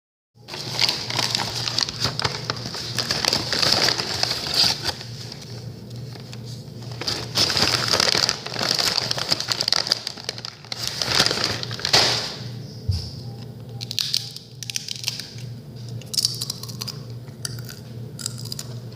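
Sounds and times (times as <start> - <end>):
steady low hum: 0.4 - 18.9
dense crunching and crackling: 0.5 - 12.4.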